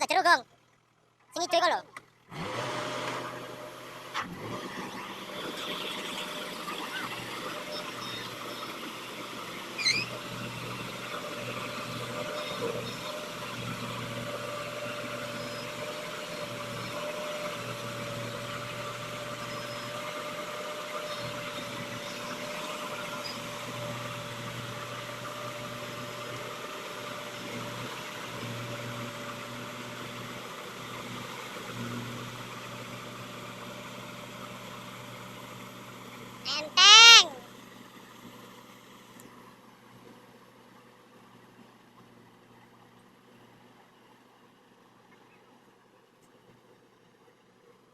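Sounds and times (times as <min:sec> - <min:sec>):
farm machinery engine humming: 0:00.0 - 0:43.7.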